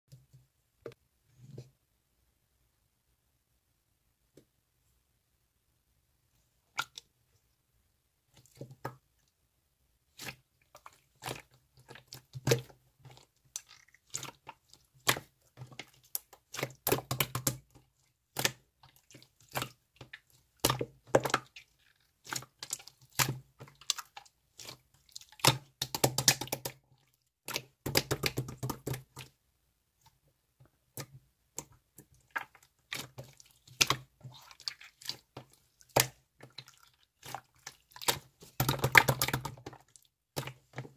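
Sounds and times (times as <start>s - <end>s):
slime squishing with sticky pops: 10.2s - 26.8s, 27.4s - 29.4s, 30.8s - 40.8s.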